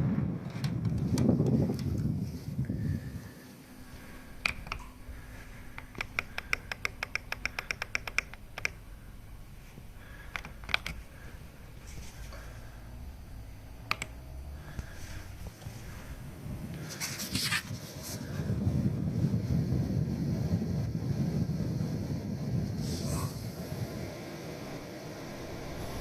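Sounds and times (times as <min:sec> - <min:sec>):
low steady hum: 0:00.0 - 0:26.0
sharp clicks: 0:04.2 - 0:11.4, 0:13.8 - 0:16.0.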